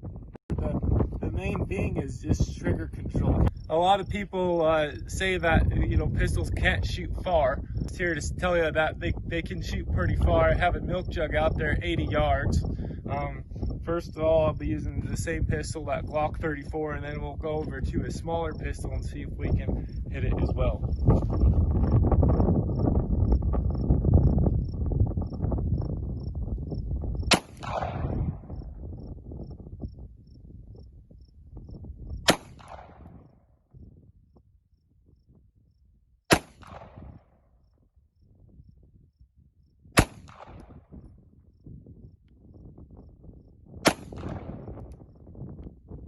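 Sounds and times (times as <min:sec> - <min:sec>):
insect chirping: 0:03.5 - 0:03.7, 0:20.9 - 0:27.3, 0:28.5 - 0:32.2, 0:37.2 - 0:39.9
pistol shots with echo: 0:27.3 - 0:28.5, 0:32.3 - 0:33.2, 0:36.3 - 0:37.2, 0:40.0 - 0:40.8, 0:43.8 - 0:44.6.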